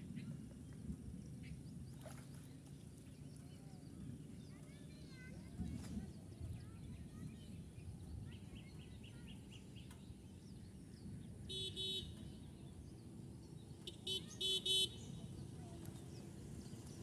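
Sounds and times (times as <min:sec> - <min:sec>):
low outdoor rumble: 0:00.0 - 0:17.0
vehicle horn honking: 0:11.5 - 0:12.2, 0:13.9 - 0:15.1.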